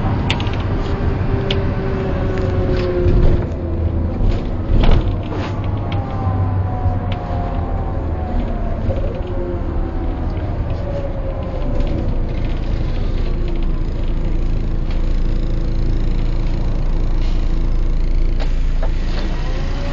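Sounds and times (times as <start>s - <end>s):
diesel bus engine running: 0.0s - 19.9s
gear whine: 0.0s - 19.9s.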